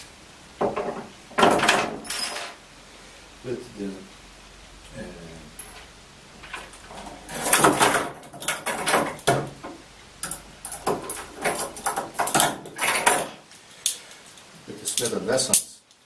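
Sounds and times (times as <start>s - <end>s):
metal handcuffs clattering: 1.4s - 2.6s, 14.8s - 15.2s.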